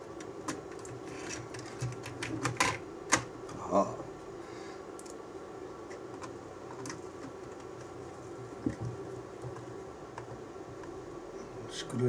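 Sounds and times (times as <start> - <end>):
steady low hum: 0.0 - 12.0
small plastic parts clicking: 5.0 - 5.2.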